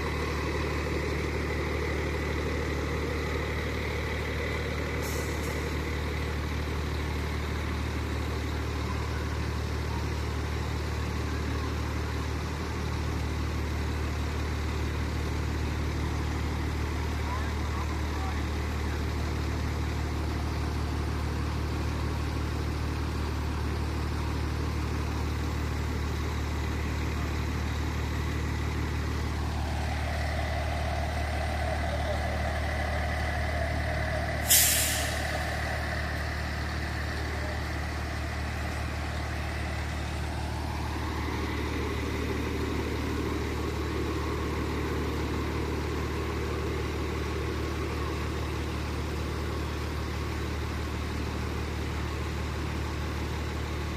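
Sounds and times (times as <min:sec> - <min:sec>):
fire truck engine idling: 0:00.0 - 0:53.9
air brakes hissing: 0:33.8 - 0:36.1.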